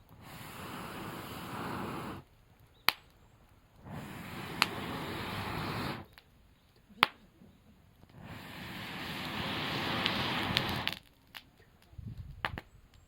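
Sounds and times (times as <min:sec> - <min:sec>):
campfire hissing: 0:00.0 - 0:11.9
wood snapping in fire: 0:02.2 - 0:07.2, 0:10.0 - 0:13.0.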